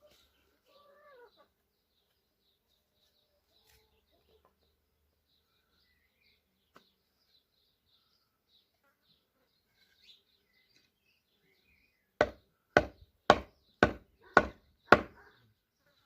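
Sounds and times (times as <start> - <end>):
faint birdsong: 0.0 - 16.0
axe chopping wood: 12.2 - 15.2.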